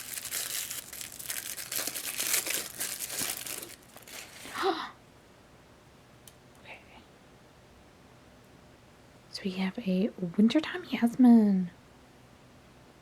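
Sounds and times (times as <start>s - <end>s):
packaging crinkling and tearing: 0.0s - 4.6s.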